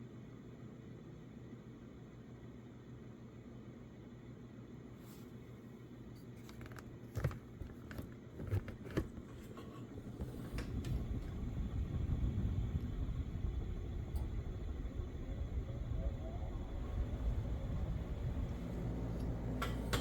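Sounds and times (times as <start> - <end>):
ceiling fan running: 0.0 - 20.0
low rumble: 10.4 - 20.0.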